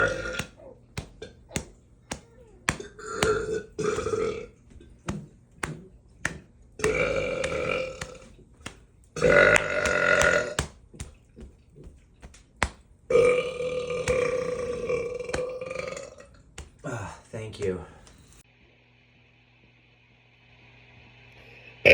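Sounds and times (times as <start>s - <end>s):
man burping loudly: 0.0s - 0.5s, 2.9s - 4.5s, 6.8s - 8.2s, 9.2s - 10.6s, 13.1s - 16.3s.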